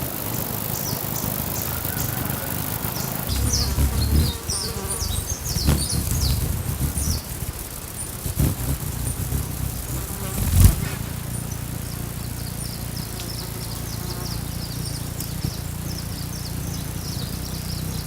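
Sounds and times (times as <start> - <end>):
hummingbird wings humming: 0.0 - 18.0
high bird chips and squeaks: 0.9 - 10.6.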